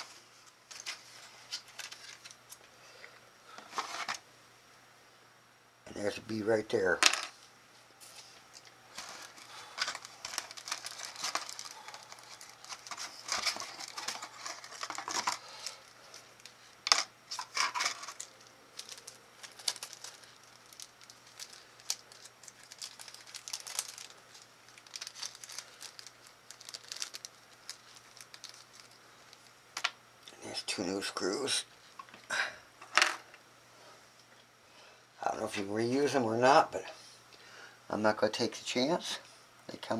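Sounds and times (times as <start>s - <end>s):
plastic packaging crinkling: 0.7s - 2.6s, 8.5s - 29.5s.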